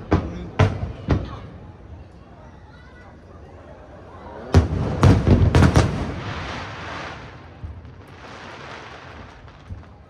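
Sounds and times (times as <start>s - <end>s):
fireworks booming: 0.0s - 1.8s, 4.5s - 10.0s
fireworks crackling: 4.5s - 10.0s.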